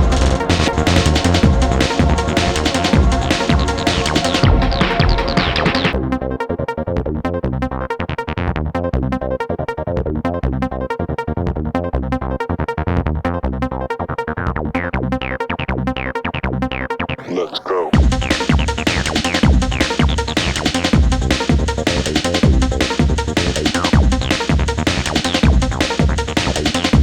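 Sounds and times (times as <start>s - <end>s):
electronic dance music: 0.0s - 6.0s, 17.2s - 27.0s.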